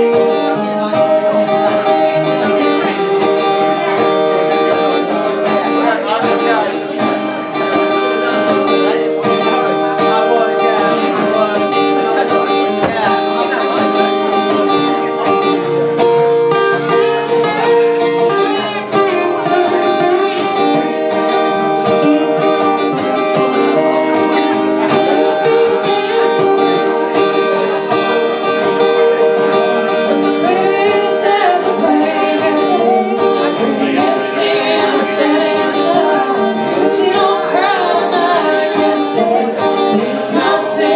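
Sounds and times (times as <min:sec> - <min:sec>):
guitar playing: 0:00.0 - 0:40.9
person singing: 0:16.9 - 0:40.9.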